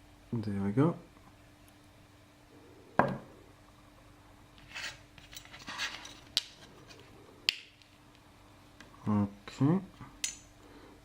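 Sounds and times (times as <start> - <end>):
light scraping: 4.6 - 7.1
metal lock parts being handled: 4.8 - 6.7.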